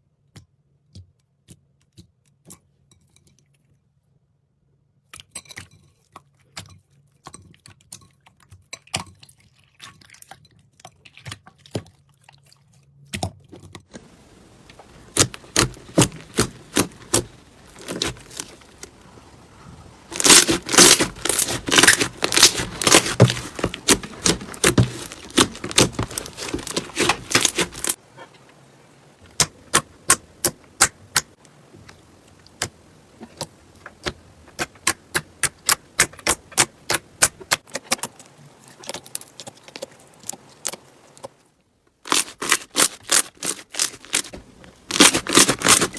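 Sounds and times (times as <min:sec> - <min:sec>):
slime squeezed crackling and popping: 0:14.8 - 0:19.0, 0:20.1 - 0:28.0, 0:42.1 - 0:45.9.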